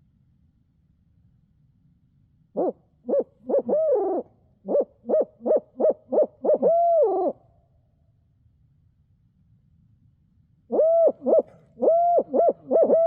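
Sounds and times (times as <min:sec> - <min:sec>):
owl hooting: 0:02.6 - 0:07.4, 0:10.7 - 0:13.0.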